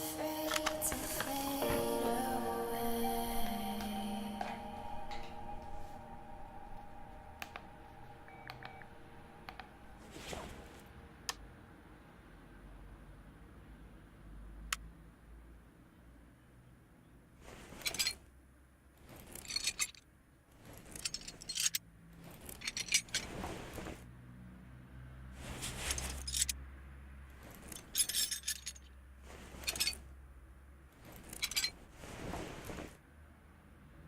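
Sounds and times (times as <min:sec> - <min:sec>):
low steady hum: 0:00.0 - 0:13.0
small objects clinking and jangling: 0:19.2 - 0:20.0, 0:20.8 - 0:21.8, 0:22.4 - 0:23.3, 0:25.9 - 0:26.6, 0:27.5 - 0:28.9, 0:29.6 - 0:30.0.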